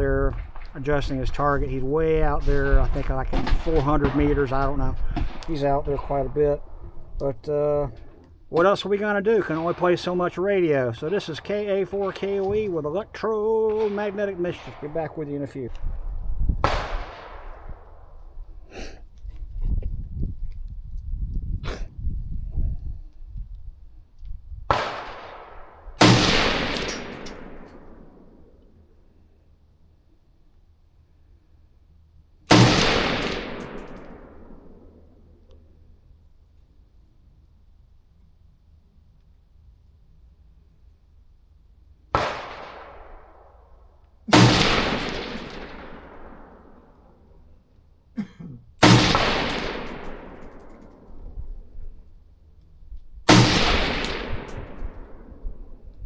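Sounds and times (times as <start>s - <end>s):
gunshots with long echo: 3.4s - 6.8s, 9.3s - 12.8s, 13.4s - 15.4s, 16.6s - 18.2s, 24.7s - 28.8s, 32.5s - 35.3s, 42.1s - 47.3s, 48.8s - 51.8s, 53.3s - 55.8s.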